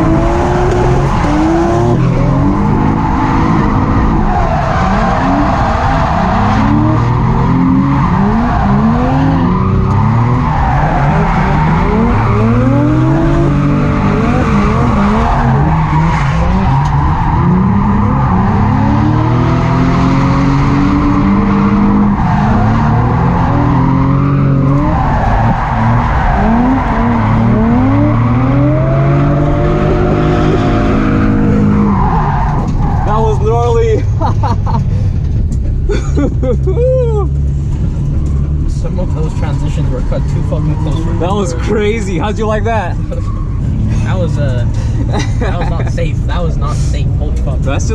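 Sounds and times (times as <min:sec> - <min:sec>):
car engine revving hard: 0:00.0 - 0:32.7.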